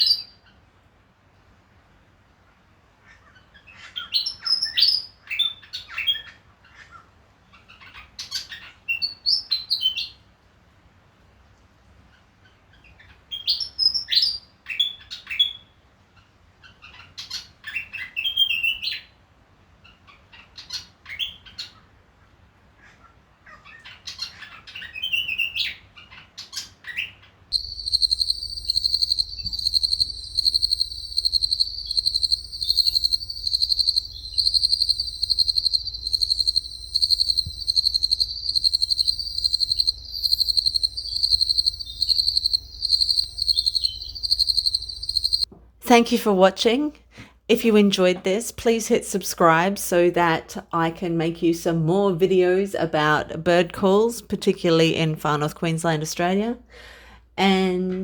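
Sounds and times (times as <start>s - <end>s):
bird calling in high phrases: 0.0s - 0.5s, 22.9s - 45.5s
pulsing high insect chorus: 27.5s - 45.5s.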